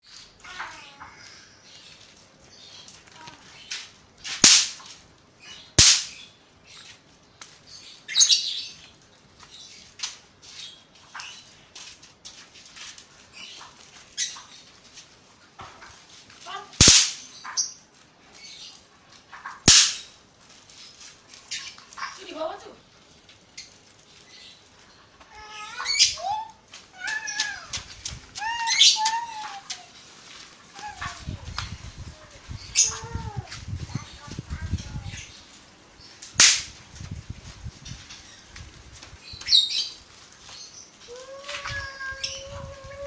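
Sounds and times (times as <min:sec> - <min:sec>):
firecrackers popping: 0:04.3 - 0:05.0, 0:05.8 - 0:06.2, 0:16.8 - 0:17.3, 0:19.6 - 0:20.2, 0:36.3 - 0:37.0
small cracks and snaps: 0:36.2 - 0:36.8.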